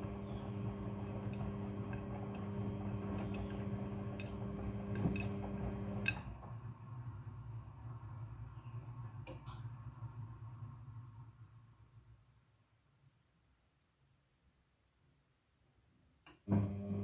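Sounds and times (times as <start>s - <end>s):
washing machine motor humming: 0.0s - 6.2s, 16.5s - 17.0s.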